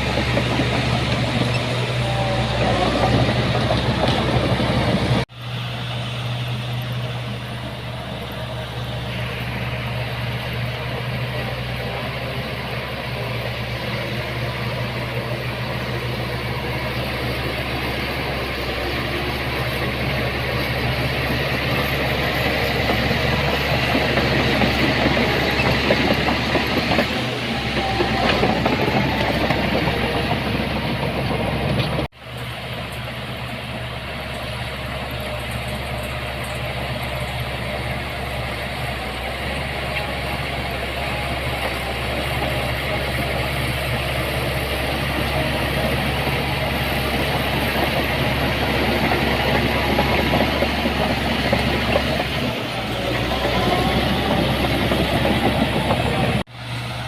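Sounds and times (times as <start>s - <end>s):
heavy diesel machinery engine: 0.0s - 57.0s.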